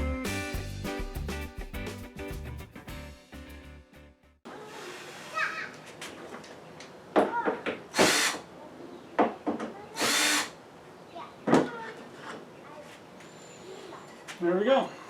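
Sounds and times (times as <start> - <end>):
small power tool running: 7.9 - 8.4, 10.0 - 10.6.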